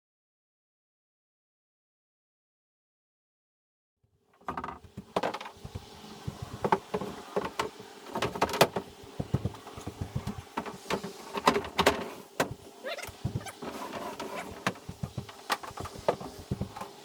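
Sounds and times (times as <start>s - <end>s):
wooden knocks and clatters: 4.4s - 17.0s.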